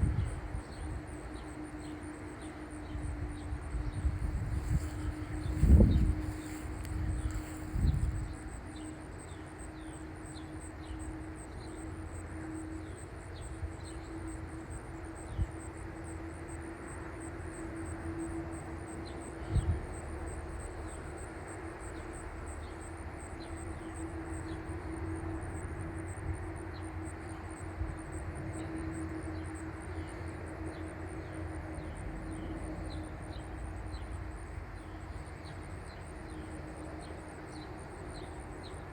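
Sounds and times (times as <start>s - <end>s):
distant jet engines rumbling: 0.0s - 9.2s
insects chirping: 0.0s - 38.9s.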